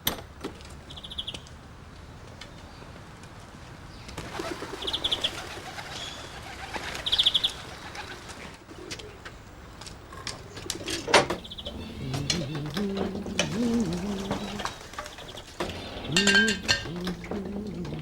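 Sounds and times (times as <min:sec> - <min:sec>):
birds chirping trills: 0:00.9 - 0:01.5, 0:03.9 - 0:09.2, 0:10.4 - 0:18.0.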